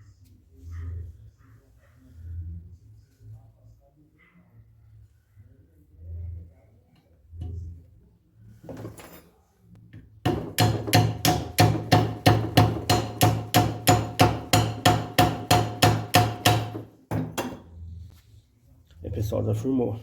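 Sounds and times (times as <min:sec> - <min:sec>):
small hammer striking rivet: 0:10.3 - 0:17.6.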